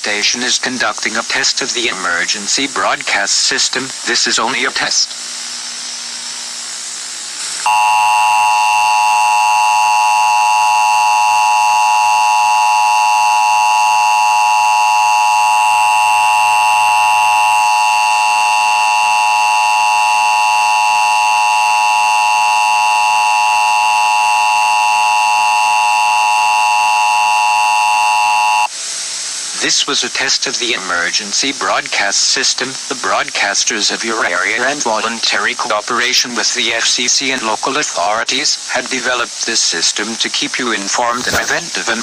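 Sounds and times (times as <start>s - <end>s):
hiss: 0.1s - 7.7s, 28.7s - 42.0s
two-tone alarm signal: 7.6s - 28.7s.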